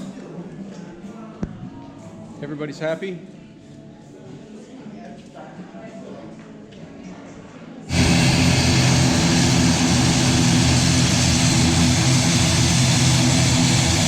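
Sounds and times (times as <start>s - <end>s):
propeller airplane engines: 7.9s - 14.0s
strong rushing noise: 7.9s - 14.0s.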